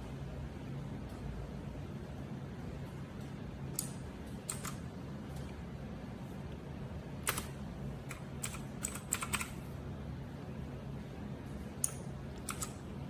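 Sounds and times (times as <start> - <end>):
mechanical keyboard keystrokes: 3.8 - 4.8, 7.2 - 9.6, 11.8 - 12.8.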